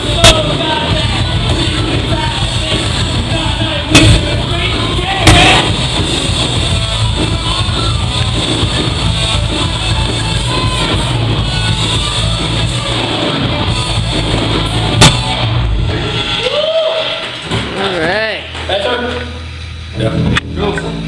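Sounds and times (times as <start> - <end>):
cymbal crash: 0.0 - 16.4
rock band playing live: 0.0 - 16.4.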